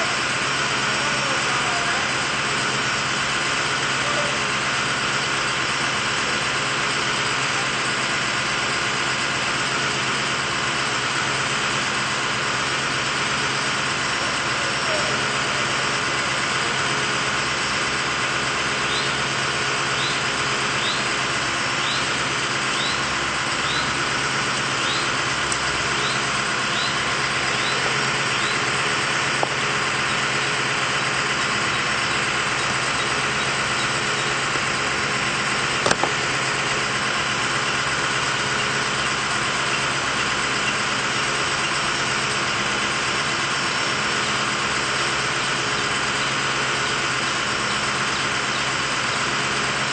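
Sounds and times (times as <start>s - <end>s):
truck engine idling: 0.0s - 49.9s
sharp knocks: 35.8s - 36.2s.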